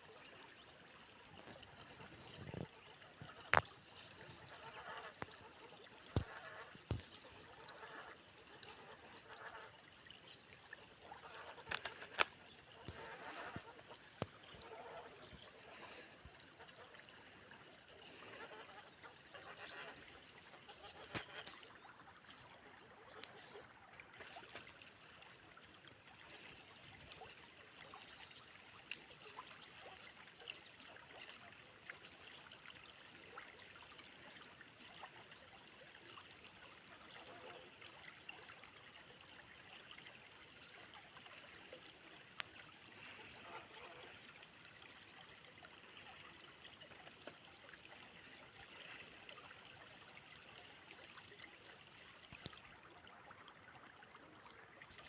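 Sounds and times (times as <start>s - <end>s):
river flowing: 0.1s - 25.0s.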